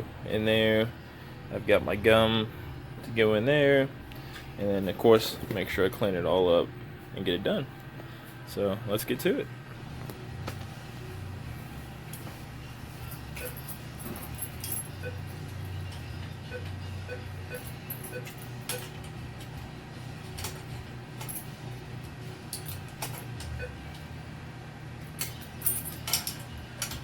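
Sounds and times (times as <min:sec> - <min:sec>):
steady low hum: 0:00.0 - 0:27.0
hard parts clinking and rattling: 0:13.0 - 0:16.1, 0:20.4 - 0:21.6, 0:22.4 - 0:23.6, 0:25.2 - 0:27.0.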